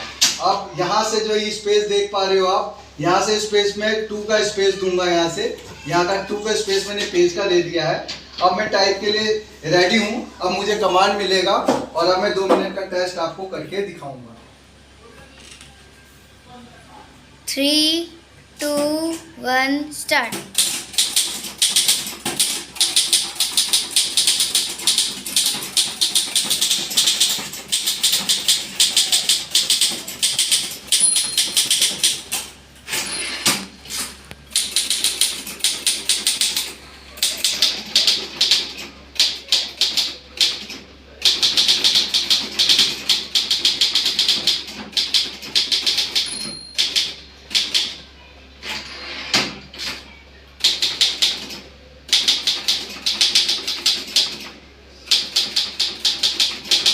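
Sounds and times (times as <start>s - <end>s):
typewriter keystrikes clattering: 20.6s - 32.4s
typewriter bell ring: 30.3s - 32.0s, 46.2s - 47.1s.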